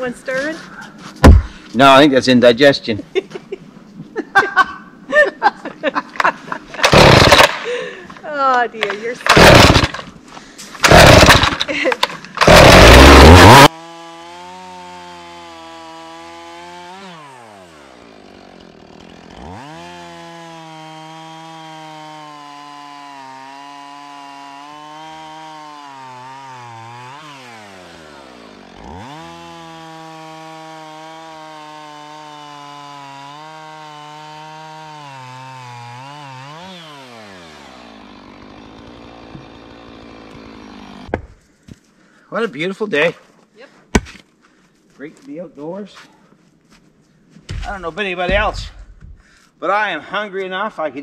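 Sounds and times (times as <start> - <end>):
chainsaw revving: 6.8 - 7.9, 8.8 - 10.1, 10.8 - 41.1.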